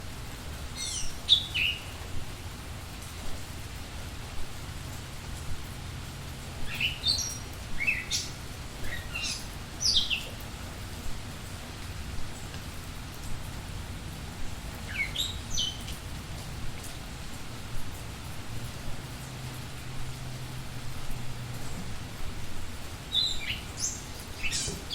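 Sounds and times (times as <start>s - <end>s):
steady falling rain: 0.0s - 24.9s
songbird whistling: 0.8s - 1.9s, 23.2s - 24.9s.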